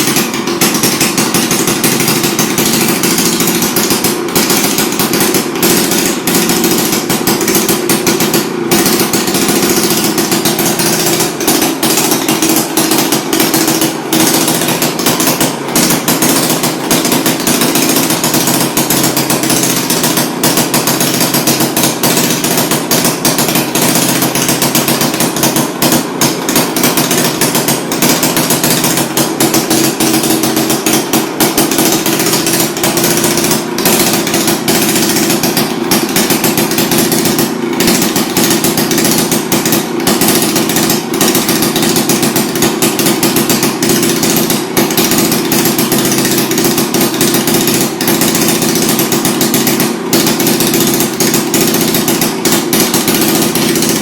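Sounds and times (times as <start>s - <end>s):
lawn mower engine running: 0.0s - 54.0s.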